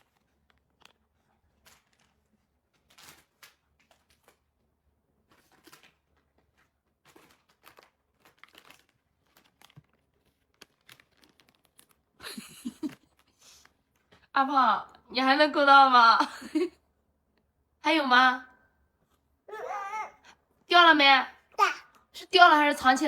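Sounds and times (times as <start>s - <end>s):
wrapper crinkling: 0.0s - 4.5s, 5.2s - 12.2s.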